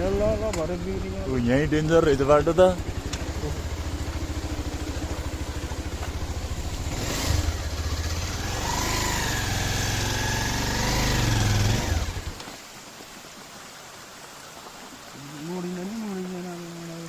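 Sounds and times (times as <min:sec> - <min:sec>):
motorcycle engine revving: 0:00.0 - 0:12.5.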